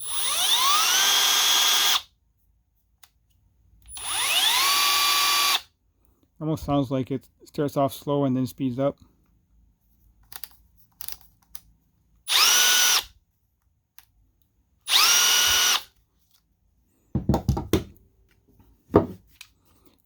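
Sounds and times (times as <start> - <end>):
cordless tool motor whine: 0.0 - 2.0, 3.9 - 5.6, 12.3 - 13.1, 14.9 - 15.9.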